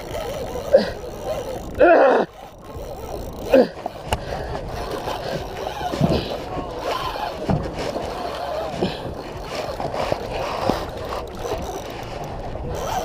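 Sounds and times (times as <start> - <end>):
faint voices: 0.0 - 13.0
water lapping around a boat: 0.0 - 13.0.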